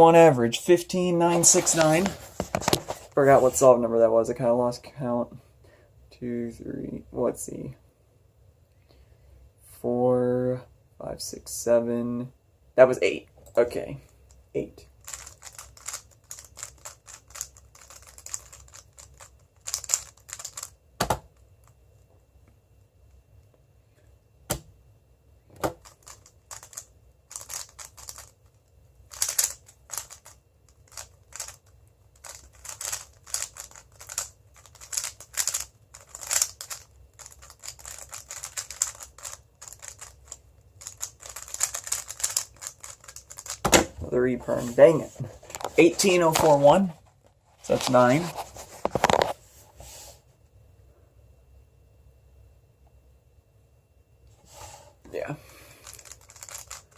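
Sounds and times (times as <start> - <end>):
speedcube layers clicking: 15.0 - 21.2, 25.7 - 43.7, 55.8 - 56.9.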